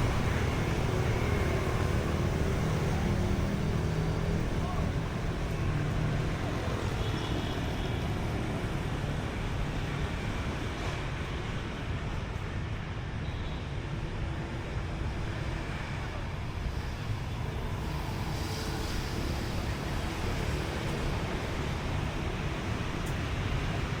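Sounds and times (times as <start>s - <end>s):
traffic rumble: 0.0s - 24.0s
faint voices: 1.2s - 6.1s.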